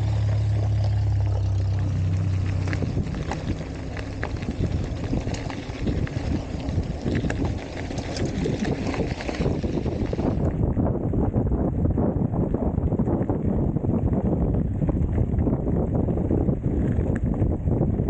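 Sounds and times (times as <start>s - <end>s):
car engine running: 0.0s - 10.8s
wind rumbling on microphone: 0.0s - 18.0s.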